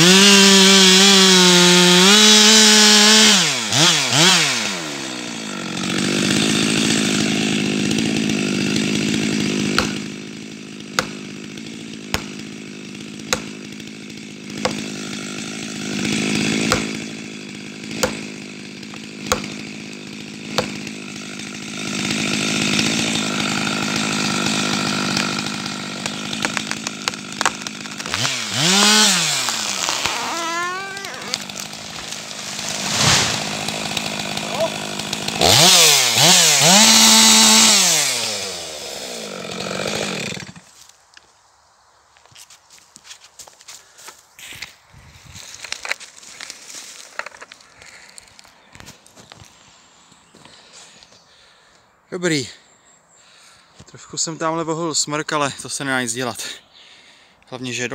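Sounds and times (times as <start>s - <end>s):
chainsaw engine idling and revving: 0.0s - 40.7s.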